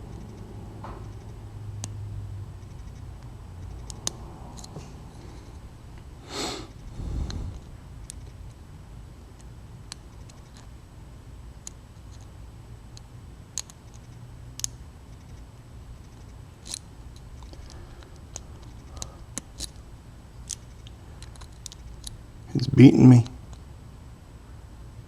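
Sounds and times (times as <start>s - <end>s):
faint low hum: 6.8s - 8.5s, 20.7s - 23.6s.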